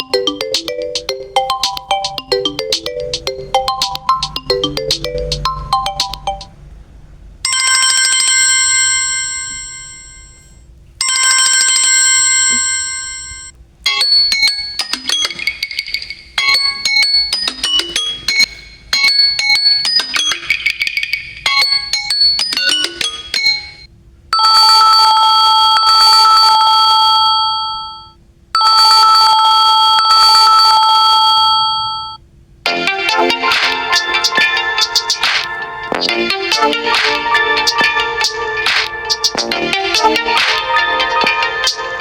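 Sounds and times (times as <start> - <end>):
short melodic phrase: 0.0 - 6.6, 32.7 - 42.0
steady ringing tone: 0.0 - 6.6.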